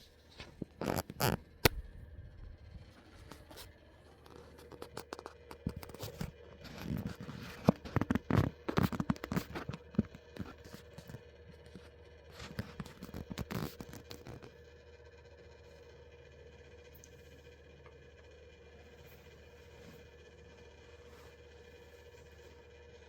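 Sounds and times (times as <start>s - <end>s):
faint steady hum: 0.0s - 23.0s
rapid clicks and knocks: 4.1s - 14.6s.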